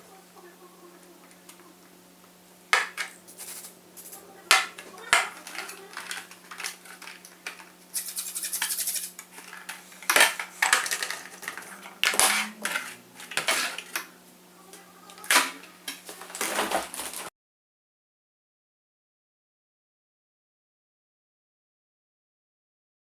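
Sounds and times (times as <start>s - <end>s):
faint steady hum: 0.0s - 17.3s
small parts clicking and clacking: 2.7s - 14.1s.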